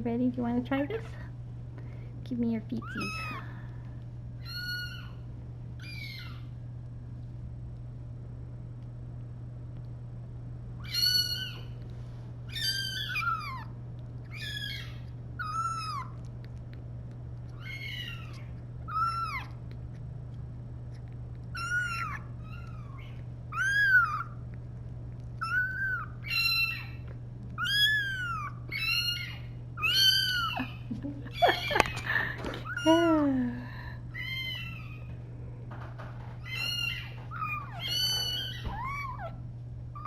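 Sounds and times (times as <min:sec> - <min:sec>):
kitten mewing: 0:02.8 - 0:03.6, 0:04.4 - 0:05.2, 0:14.3 - 0:16.3, 0:17.5 - 0:19.8, 0:21.5 - 0:24.4, 0:25.4 - 0:33.5, 0:36.4 - 0:39.4.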